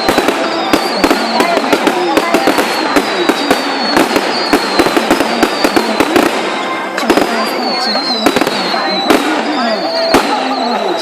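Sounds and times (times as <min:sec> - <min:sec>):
fireworks exploding: 0:00.0 - 0:11.0
people talking: 0:00.0 - 0:11.0.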